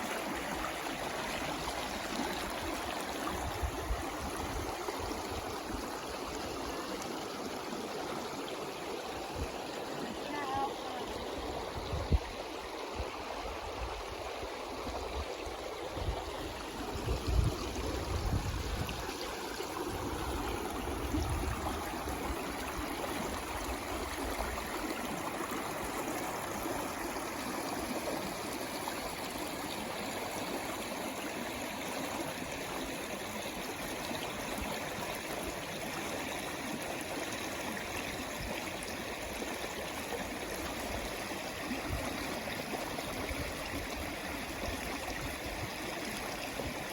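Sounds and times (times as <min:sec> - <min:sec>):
stream water rushing: 0:00.0 - 0:46.9.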